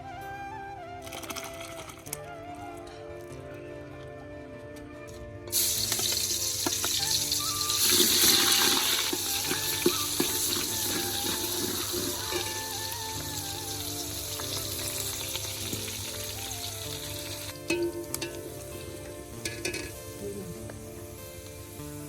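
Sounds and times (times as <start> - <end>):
crackling pops: 5.5 - 21.9
oil sizzling in hot pan: 5.5 - 22.0.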